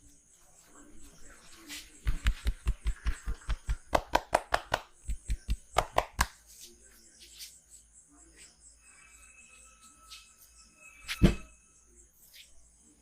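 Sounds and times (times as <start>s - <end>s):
hands striking body: 2.1s - 6.4s.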